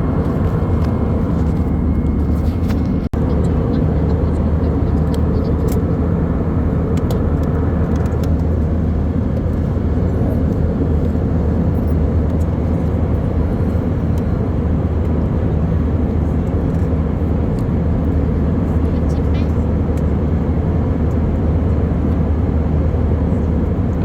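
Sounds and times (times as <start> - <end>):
airliner cabin drone: 0.0 - 24.0.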